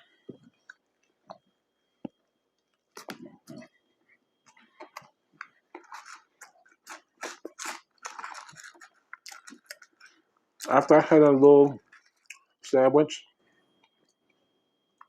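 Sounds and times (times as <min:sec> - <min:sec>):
person chewing crunchy food: 0:04.4 - 0:10.9, 0:11.8 - 0:12.6.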